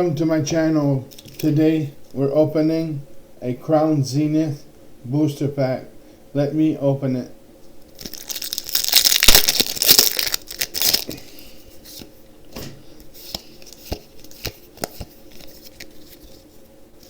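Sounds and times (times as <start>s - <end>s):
foil wrapper tearing and crinkling: 1.1s - 1.5s, 7.9s - 11.3s
cards tapping and rustling: 11.9s - 16.4s.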